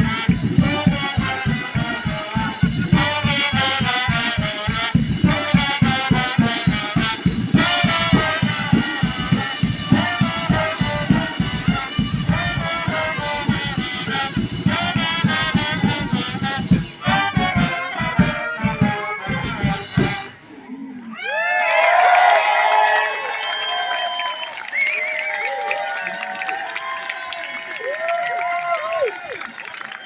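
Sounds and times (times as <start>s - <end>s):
brass band playing: 0.0s - 20.7s.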